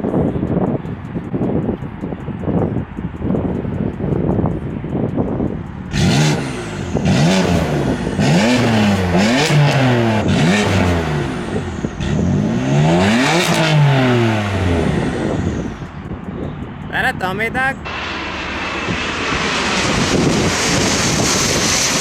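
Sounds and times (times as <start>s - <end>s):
car engine revving: 5.8s - 15.9s, 17.8s - 22.0s.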